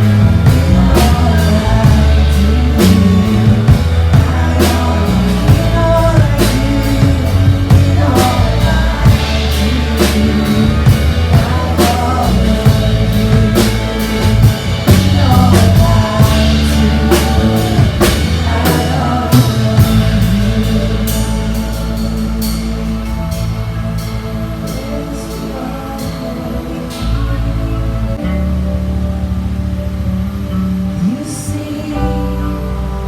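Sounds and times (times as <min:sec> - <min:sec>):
drum kit beat: 0:00.0 - 0:26.2
bass line: 0:00.0 - 0:33.0
guitar: 0:00.0 - 0:33.0
person singing: 0:00.0 - 0:33.0.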